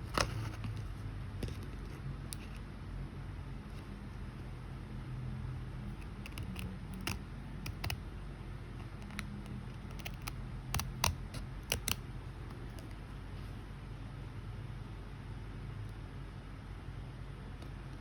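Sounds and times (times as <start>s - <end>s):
small tools clicking and snipping: 5.9s - 8.0s, 8.9s - 12.0s.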